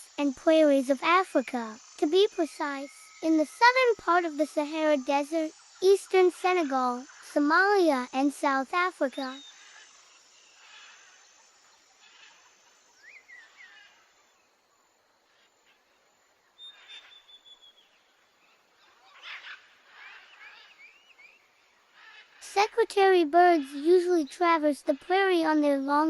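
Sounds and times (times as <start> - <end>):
birds chirping and whistling: 0.0 - 13.8, 16.6 - 18.0, 18.8 - 22.5
soft outdoor hiss: 0.0 - 26.0.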